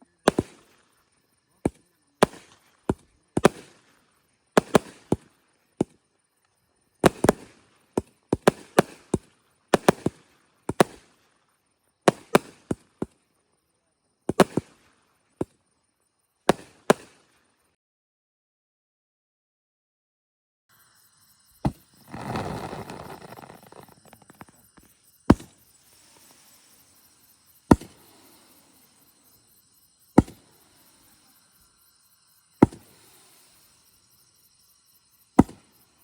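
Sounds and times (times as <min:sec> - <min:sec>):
firework bangs: 0:21.7 - 0:26.5.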